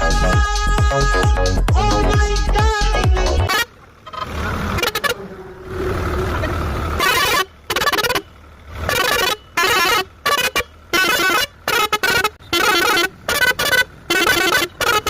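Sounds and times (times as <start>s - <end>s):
air horn blasts: 4.8s - 5.6s, 7.0s - 15.0s.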